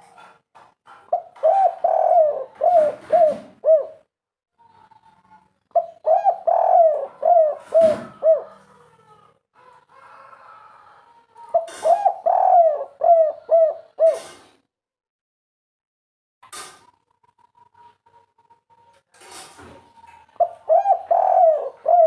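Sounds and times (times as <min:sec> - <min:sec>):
dove cooing: 0:01.1 - 0:04.1, 0:05.7 - 0:09.1, 0:11.5 - 0:14.4, 0:20.3 - 0:22.0.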